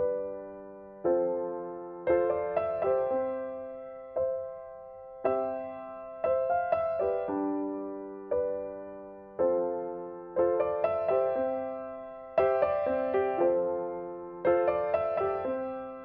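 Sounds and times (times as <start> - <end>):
soft electric piano chords: 0.0 - 16.0.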